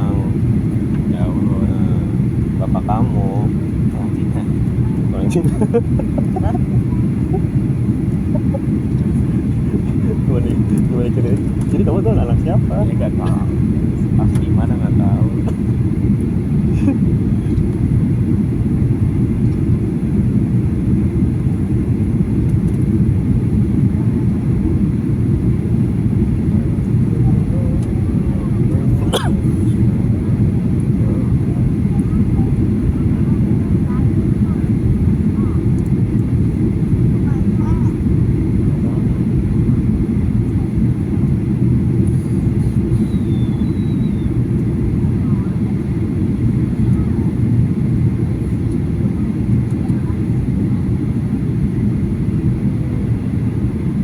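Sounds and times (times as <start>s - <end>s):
jet cabin low rumble: 0.0s - 54.0s
faint high whine: 41.9s - 47.3s.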